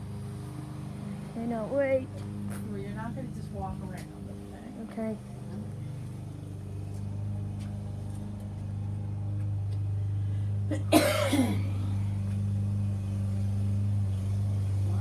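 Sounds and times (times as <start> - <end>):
car engine droning: 0.0 - 15.0
person coughing: 10.7 - 11.8.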